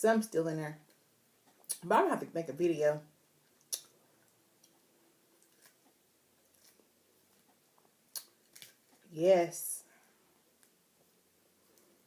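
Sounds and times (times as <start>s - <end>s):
faint chewing of salad: 3.4s - 9.1s.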